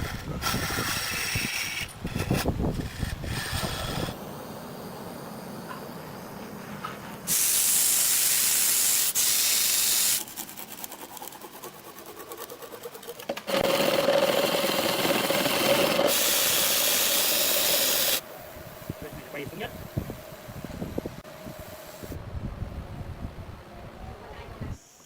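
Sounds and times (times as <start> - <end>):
rapid ticks: 10.2 - 13.6
lathe cutting with loud hissing: 13.5 - 18.2.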